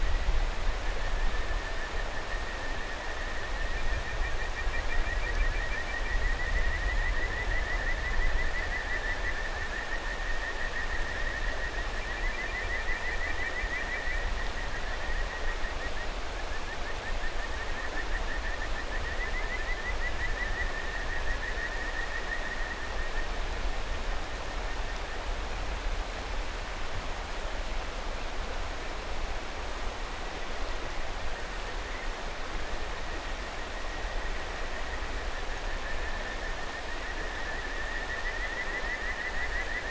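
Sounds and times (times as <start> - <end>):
rushing river: 0.0 - 39.9
frogs trilling: 1.9 - 16.0, 16.6 - 23.3, 33.0 - 39.9.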